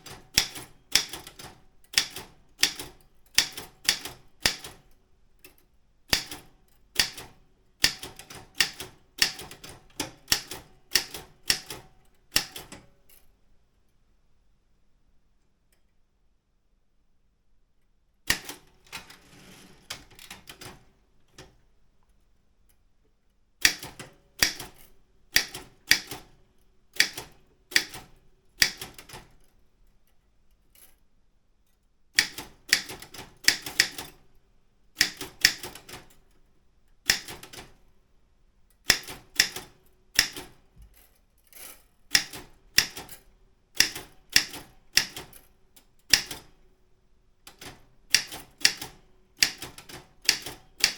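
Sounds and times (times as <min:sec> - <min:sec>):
typewriter keys striking: 0:43.8 - 0:45.4, 0:47.5 - 0:50.9.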